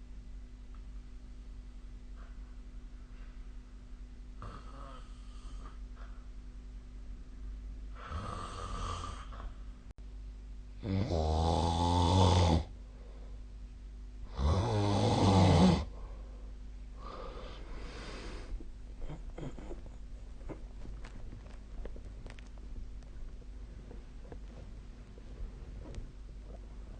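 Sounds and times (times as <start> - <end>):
person snoring: 4.4 - 5.8, 7.9 - 9.4, 10.8 - 12.8, 14.3 - 16.0, 17.0 - 20.6
soft breaths: 12.8 - 13.6, 15.8 - 26.9.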